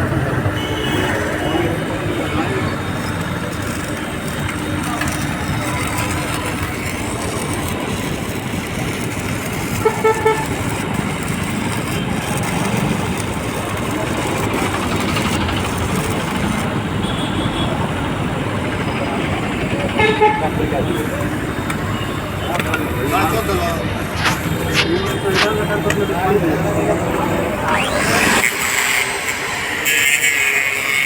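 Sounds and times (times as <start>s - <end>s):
traffic noise: 0.0s - 31.0s
vehicle horn tooting: 0.4s - 2.8s, 9.7s - 10.8s, 17.0s - 17.8s, 20.0s - 21.1s.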